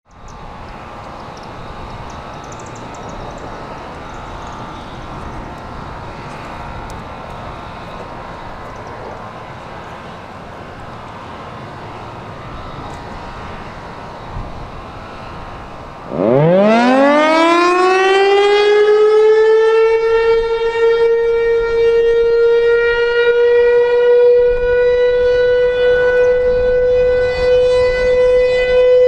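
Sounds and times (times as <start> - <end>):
distant rumble: 0.3 - 18.5.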